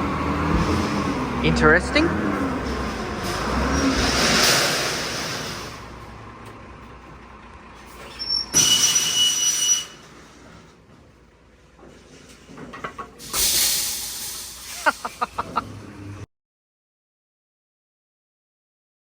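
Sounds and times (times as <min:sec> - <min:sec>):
heavy truck running: 0:00.0 - 0:16.3
high steady squeal: 0:07.8 - 0:10.3
loud air hiss: 0:13.2 - 0:15.3.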